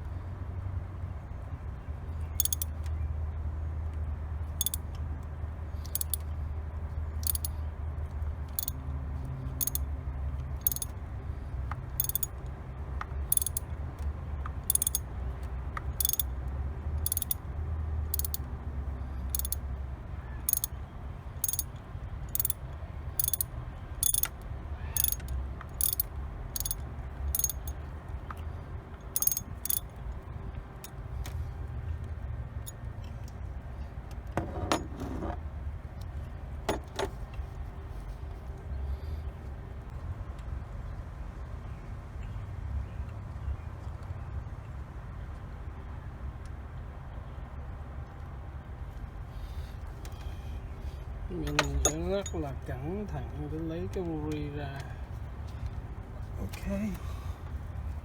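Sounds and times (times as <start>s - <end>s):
hand ratchet wrench clicking: 2.4s - 2.7s, 4.6s - 4.8s, 5.8s - 6.2s, 7.2s - 7.5s, 8.6s - 8.8s, 9.6s - 9.8s, 10.6s - 10.9s, 12.0s - 12.3s, 13.3s - 13.7s, 14.7s - 15.0s, 16.0s - 16.3s, 17.1s - 17.4s, 18.1s - 18.5s, 19.3s - 19.6s, 20.5s - 20.7s, 21.4s - 21.7s, 22.3s - 22.6s, 23.2s - 24.3s, 25.0s - 27.7s, 29.1s - 29.8s.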